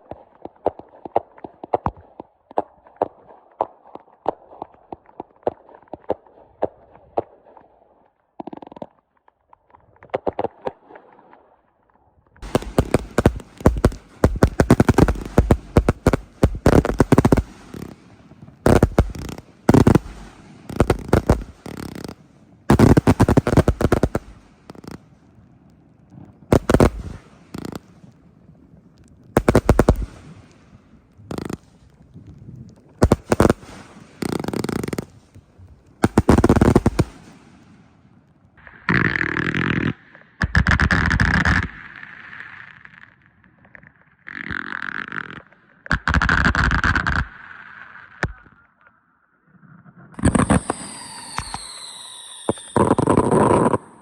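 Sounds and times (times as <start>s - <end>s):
firework pops and crackles: 0.0s - 11.6s, 12.3s - 48.6s, 50.2s - 54.0s
rapid loud firework bangs: 12.4s - 25.1s, 26.5s - 28.0s, 29.4s - 31.8s, 33.0s - 35.4s, 36.0s - 37.8s.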